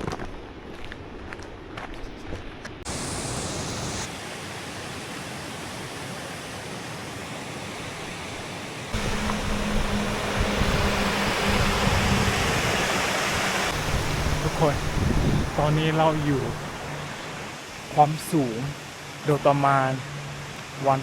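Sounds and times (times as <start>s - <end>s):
outdoor rushing noise: 8.9s - 17.8s.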